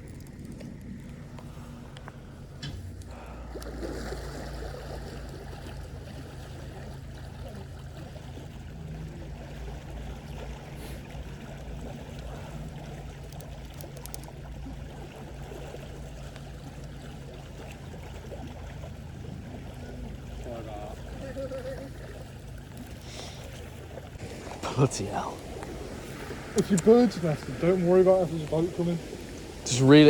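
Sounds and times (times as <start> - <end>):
boat engine rumbling: 0.0 - 30.0
wash of moving water: 0.0 - 30.0.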